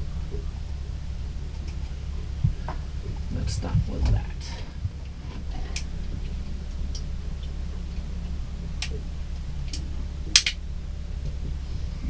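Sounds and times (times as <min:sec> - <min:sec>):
low hum: 0:00.0 - 0:12.0
blade snapping off: 0:09.7 - 0:10.6.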